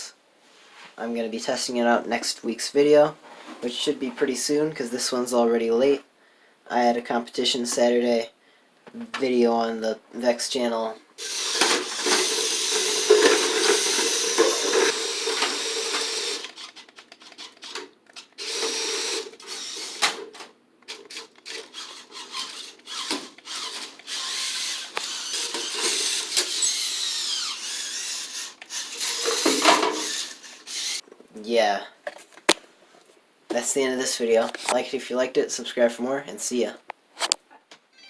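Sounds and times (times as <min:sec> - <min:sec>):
small electric motor whirring: 0:11.2 - 0:17.8, 0:18.4 - 0:20.2, 0:21.2 - 0:31.0.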